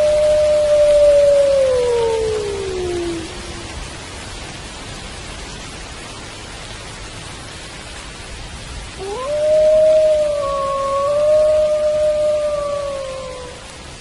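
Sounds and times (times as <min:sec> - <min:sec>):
wolf howling: 0:00.0 - 0:03.8, 0:09.0 - 0:13.7
steady rain falling: 0:00.0 - 0:14.0.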